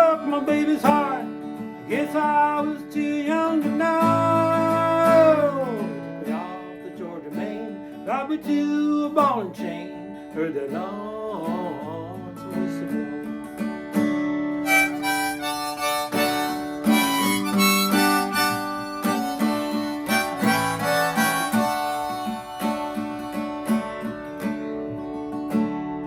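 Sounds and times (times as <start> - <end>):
strummed acoustic guitar: 0.0 - 26.0
harmonica solo: 3.8 - 5.9, 14.5 - 25.2.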